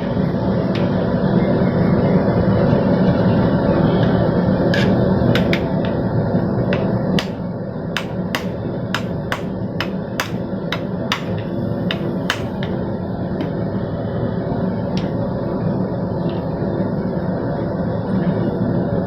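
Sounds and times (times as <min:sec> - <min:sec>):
steady drone: 0:00.0 - 0:19.0
hammer striking steel on anvil: 0:04.8 - 0:06.0, 0:06.7 - 0:12.8.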